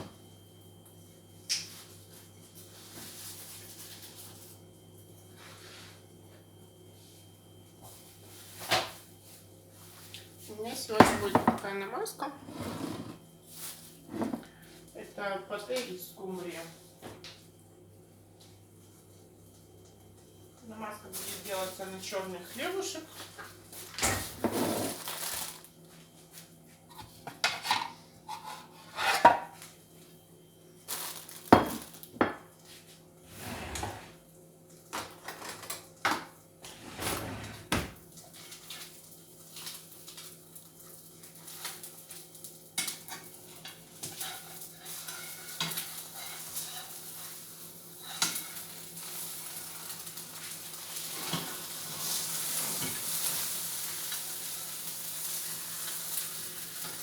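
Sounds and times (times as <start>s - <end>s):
faint sizzling hiss: 38.2s - 57.0s.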